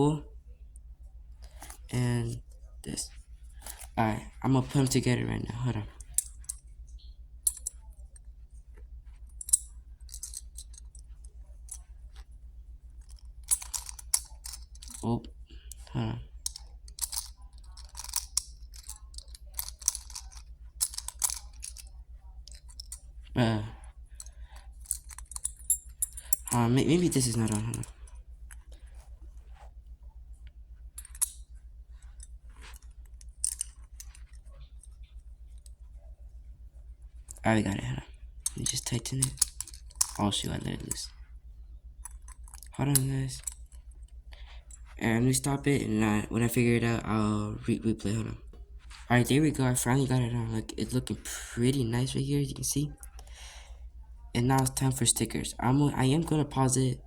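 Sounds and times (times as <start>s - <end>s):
steady low hum: 0.0s - 57.0s
plastic and metal parts clicking: 6.0s - 7.9s, 9.1s - 12.2s, 13.0s - 21.9s, 22.5s - 23.0s, 24.1s - 28.7s, 32.0s - 34.8s, 38.4s - 40.2s, 42.0s - 43.8s.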